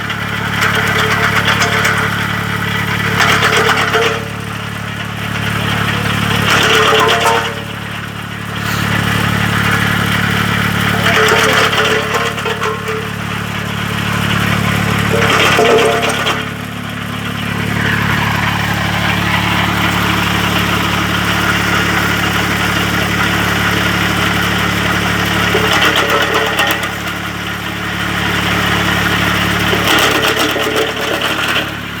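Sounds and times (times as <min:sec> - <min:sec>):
branch chipper engine running: 0:00.0 - 0:32.0
branches crunching in chipper: 0:08.6 - 0:09.5.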